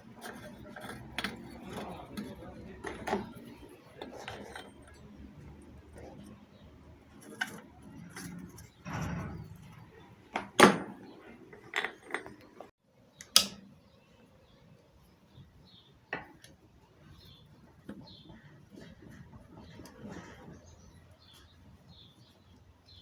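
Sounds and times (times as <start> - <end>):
metal parts clinking and knocking: 0.2 - 12.7
scraping rustle: 17.0 - 22.5.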